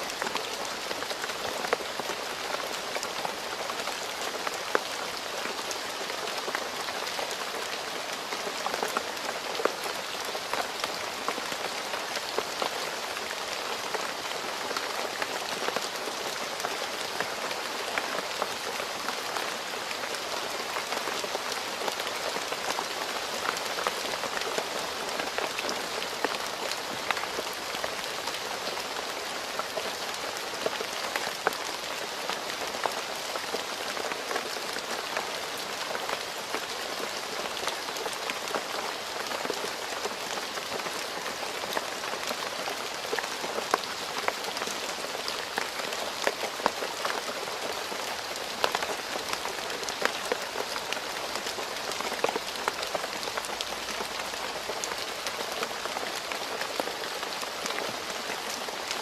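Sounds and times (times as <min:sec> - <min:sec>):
rain falling on a road: 0:00.0 - 0:59.0.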